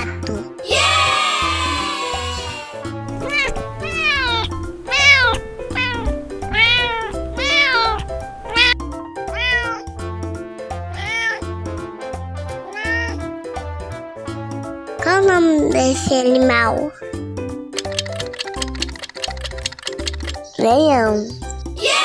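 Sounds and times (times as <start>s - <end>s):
cat meowing: 3.1s - 9.9s, 10.9s - 11.5s, 12.6s - 13.3s.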